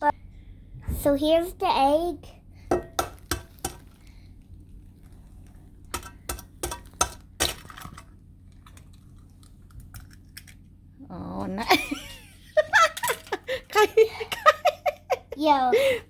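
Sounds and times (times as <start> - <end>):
egg tapping against bowl rim: 2.7 - 4.0.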